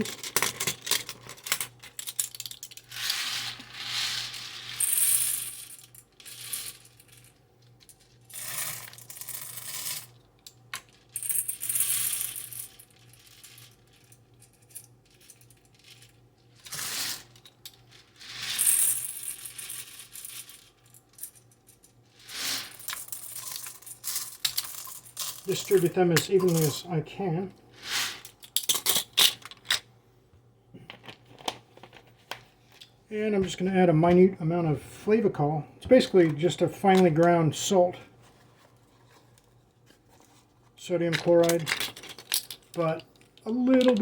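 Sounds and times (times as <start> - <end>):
popcorn kernels poured into pot: 22.2 - 24.2, 24.8 - 26.8.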